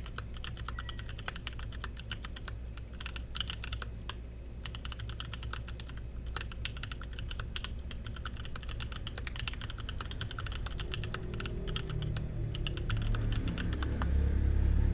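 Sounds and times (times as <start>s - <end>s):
low rumble: 10.4s - 14.9s.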